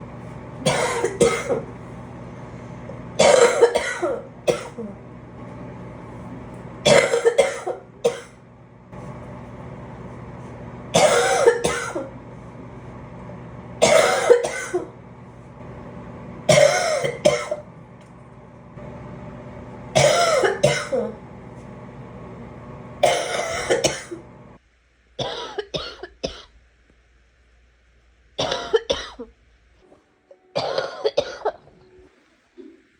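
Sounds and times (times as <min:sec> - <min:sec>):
person coughing: 0:00.6 - 0:01.7, 0:03.2 - 0:05.0, 0:06.8 - 0:08.4, 0:10.9 - 0:12.1, 0:13.8 - 0:14.9, 0:16.5 - 0:17.6, 0:20.0 - 0:21.2, 0:23.0 - 0:24.2, 0:25.2 - 0:26.5, 0:28.4 - 0:29.3, 0:30.6 - 0:31.7.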